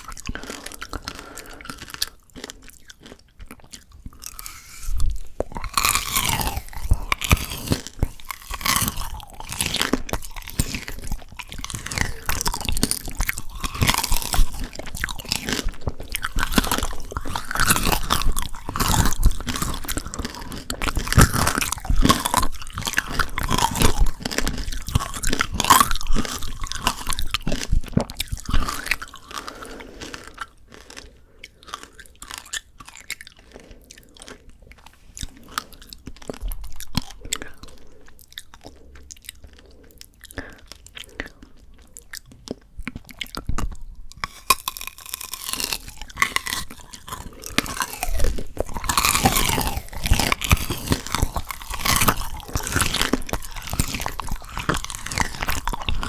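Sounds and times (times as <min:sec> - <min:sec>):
candy shell crunching: 0:00.0 - 0:56.0.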